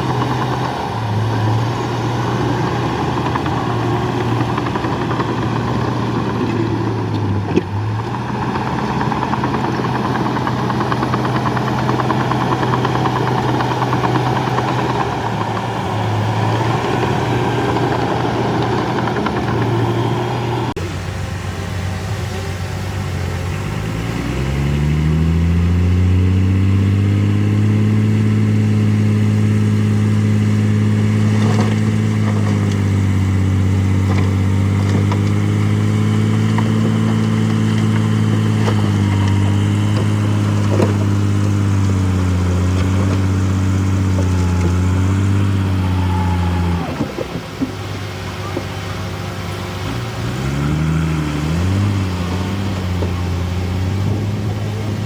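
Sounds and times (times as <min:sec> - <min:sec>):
bulldozer diesel engine revving: 0:00.0 - 0:55.0.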